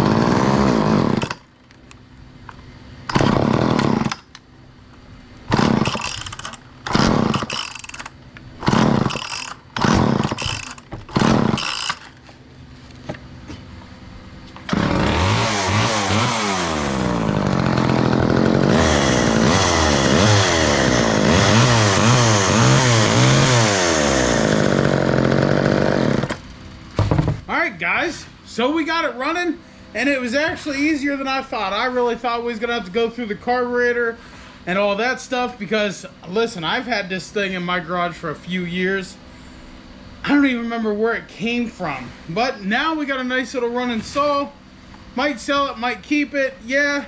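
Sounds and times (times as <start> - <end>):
chainsaw engine revving: 0.0 - 1.4, 3.1 - 4.3, 5.5 - 8.0, 8.6 - 12.1, 14.7 - 26.4.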